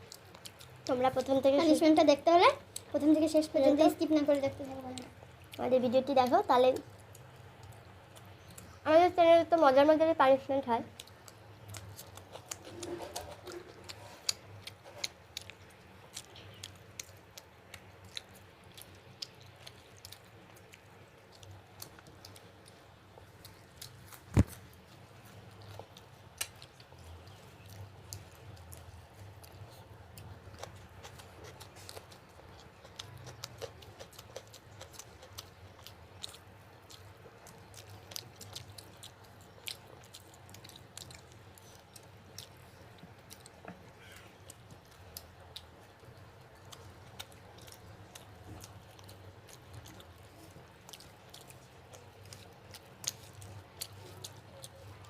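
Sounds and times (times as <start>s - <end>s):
close chewing and mouth sounds: 0.0s - 55.0s.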